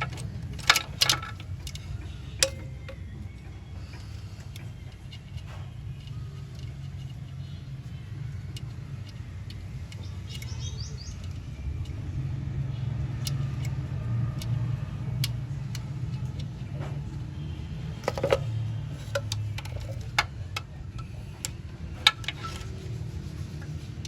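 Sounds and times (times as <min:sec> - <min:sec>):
bird chirping: 0:09.8 - 0:11.6.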